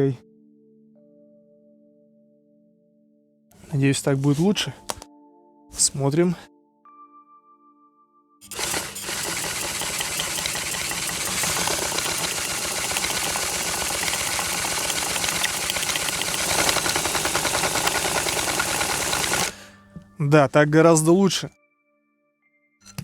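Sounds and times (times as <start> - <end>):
piston model mechanical rattle: 8.4 - 19.5.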